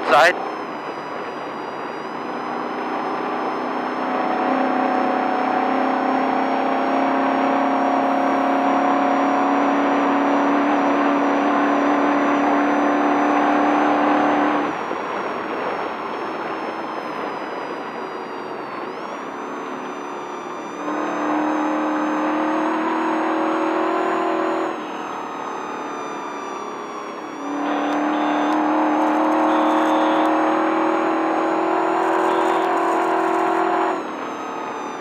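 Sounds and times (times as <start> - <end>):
truck engine at speed: 0.0 - 35.0.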